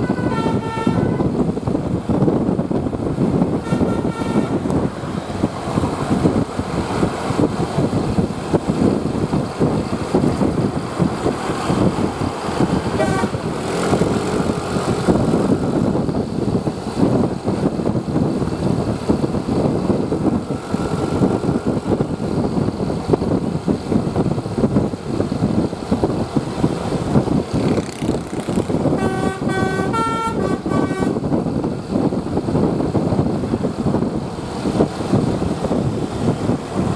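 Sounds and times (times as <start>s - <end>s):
musical bus horn: 0.0s - 1.4s, 3.5s - 4.9s, 12.9s - 13.5s, 28.4s - 31.4s
bus rumbling: 0.0s - 36.9s
wind on microphone: 0.0s - 36.9s.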